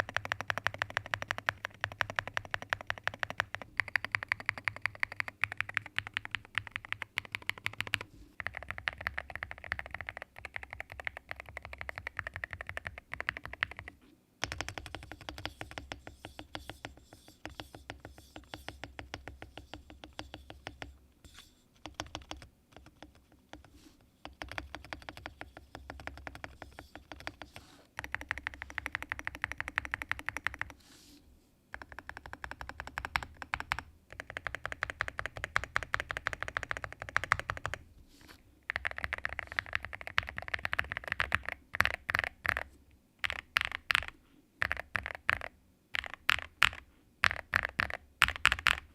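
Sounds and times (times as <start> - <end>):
mechanical keyboard clacks: 0.0 - 15.7, 24.3 - 30.8, 31.8 - 37.8, 38.7 - 48.9.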